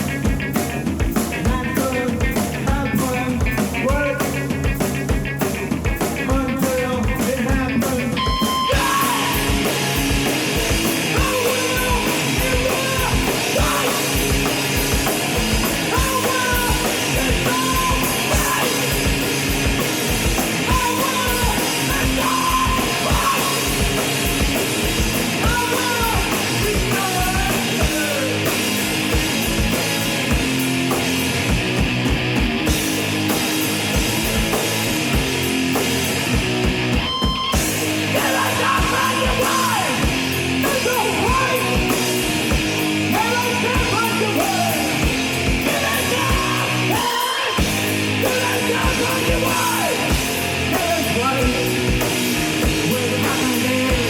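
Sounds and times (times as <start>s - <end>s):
distorted electric guitar: 0.0s - 54.0s
pounding drum kit: 0.0s - 54.0s
person shouting vocals: 8.7s - 9.5s, 11.1s - 14.1s, 20.7s - 23.7s, 38.2s - 40.0s, 45.7s - 47.6s, 48.3s - 50.1s.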